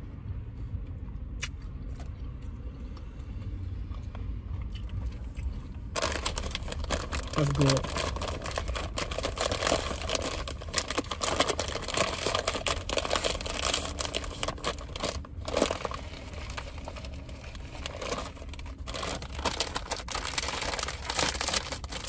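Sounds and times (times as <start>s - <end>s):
food wrapper crinkling: 6.0s - 22.0s.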